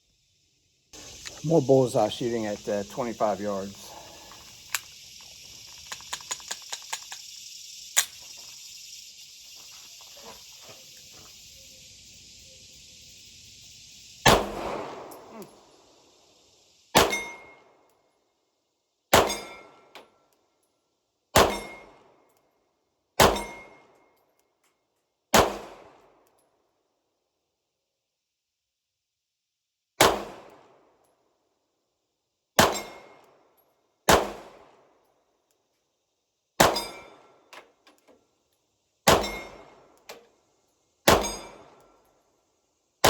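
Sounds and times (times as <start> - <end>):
pistol handling clicks: 4.1 - 7.3, 8.0 - 8.2
pistol shots: 14.3 - 15.3, 17.0 - 17.5, 19.1 - 19.7, 21.4 - 22.0, 23.2 - 23.8, 25.3 - 26.0, 30.0 - 30.7, 32.6 - 33.2, 34.1 - 34.7, 36.6 - 37.2, 39.1 - 39.8, 41.1 - 41.8.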